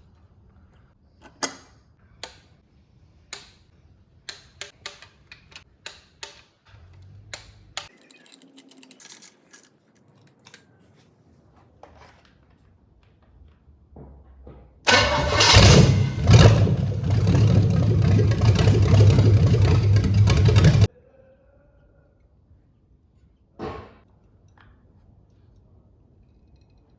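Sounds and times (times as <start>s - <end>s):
low hum: 14.9s - 20.9s.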